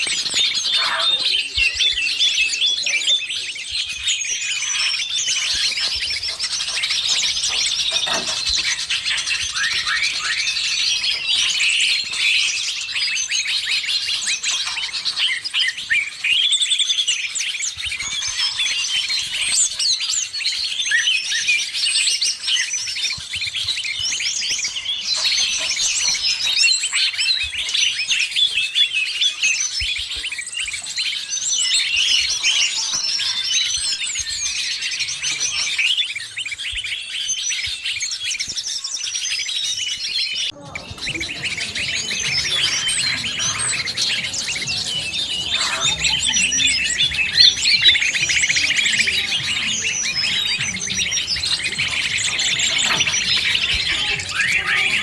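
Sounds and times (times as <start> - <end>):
songbirds chirping and calling: 0.0 - 55.0.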